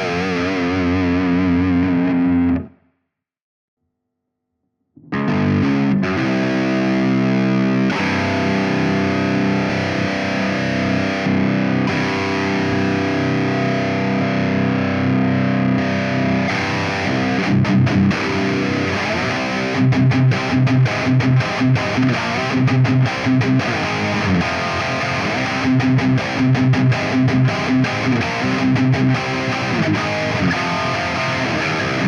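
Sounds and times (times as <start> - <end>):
distorted electric guitar chords: 0.0 - 2.8, 5.0 - 32.0.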